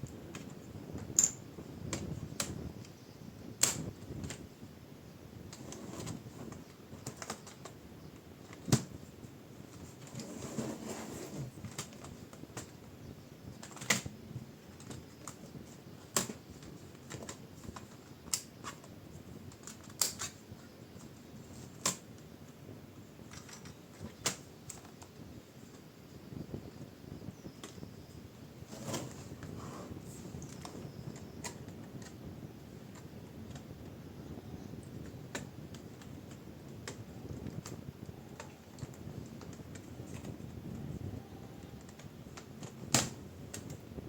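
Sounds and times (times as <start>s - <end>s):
plastic rubbing and scraping: 5.4s - 7.7s, 9.7s - 12.7s, 28.6s - 32.2s.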